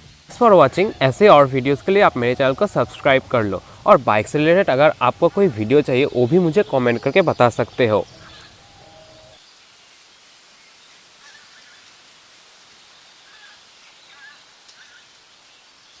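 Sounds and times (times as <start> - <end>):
faint outdoor background noise: 0.0 - 16.0
low hum: 0.3 - 9.4.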